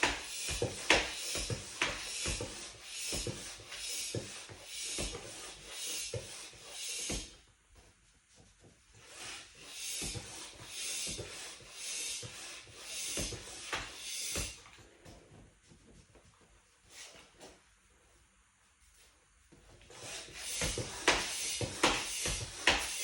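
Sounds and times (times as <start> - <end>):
tire pump strokes of air: 0.0 - 7.5, 8.9 - 15.0, 19.8 - 23.0.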